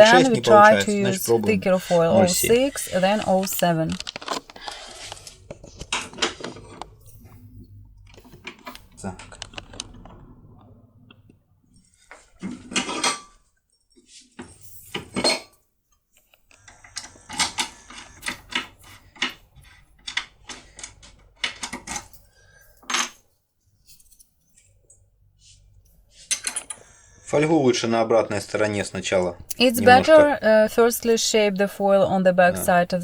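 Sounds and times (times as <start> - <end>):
metal tools clinking and clicking: 12.6 - 15.6, 26.2 - 26.8.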